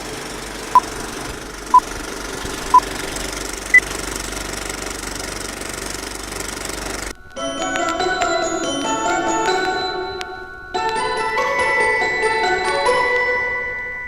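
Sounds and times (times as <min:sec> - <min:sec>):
engine running: 0:00.0 - 0:10.2.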